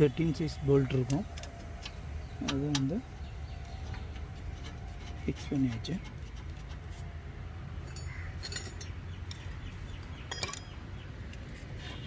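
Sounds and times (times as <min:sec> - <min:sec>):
metallic clinks of hand tools: 0:07.9 - 0:09.0, 0:10.3 - 0:10.8.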